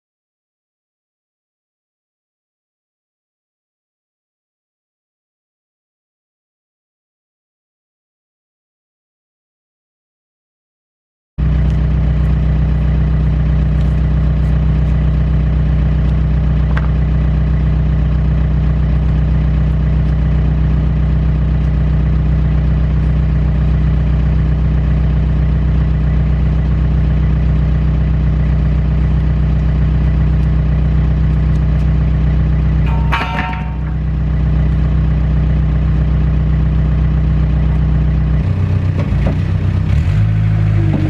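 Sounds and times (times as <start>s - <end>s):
diesel engine running steadily: 11.4s - 41.0s.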